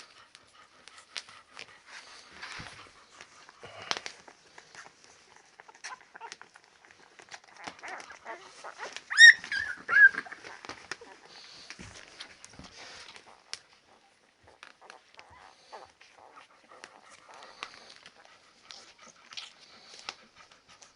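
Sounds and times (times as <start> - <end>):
puppies shuffling and snuffling: 0.0 - 20.9
puppy squealing: 7.6 - 11.3.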